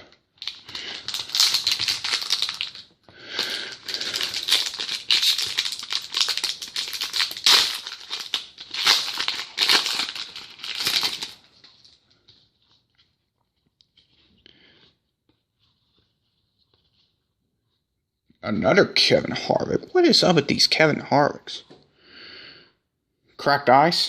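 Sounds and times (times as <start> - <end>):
card wrappers crinkling and rustling: 0.3 - 14.3.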